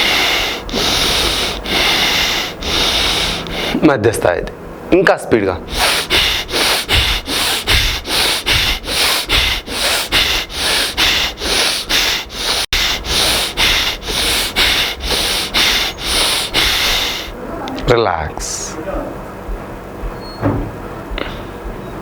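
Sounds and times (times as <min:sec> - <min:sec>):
rapid forceful nose breathing: 0:00.0 - 0:04.0, 0:05.6 - 0:17.4.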